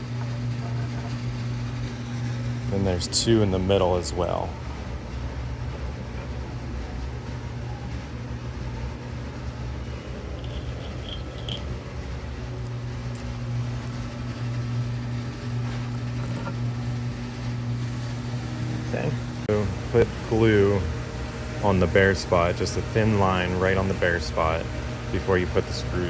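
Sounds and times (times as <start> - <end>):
low hum: 10.2 - 14.2, 17.6 - 26.0
metal bolts and washers clinking: 10.4 - 14.0.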